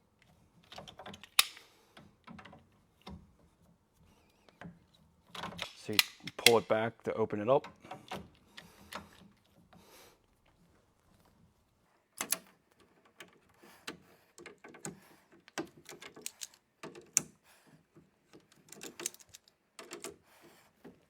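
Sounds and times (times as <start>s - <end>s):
crimping tool clicking: 5.4s - 6.7s
fittings being handled: 12.2s - 17.2s, 18.3s - 20.2s.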